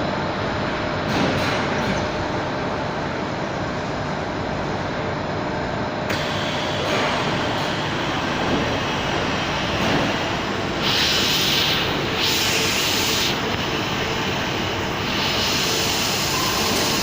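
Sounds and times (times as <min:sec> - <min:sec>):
welding machine running: 0:06.1 - 0:17.0
bursts of hiss: 0:08.3 - 0:17.0.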